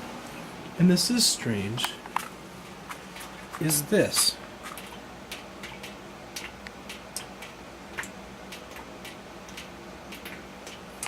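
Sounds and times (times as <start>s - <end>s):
steady low hum: 0.0s - 11.0s
water drops dripping into tub: 4.8s - 11.0s.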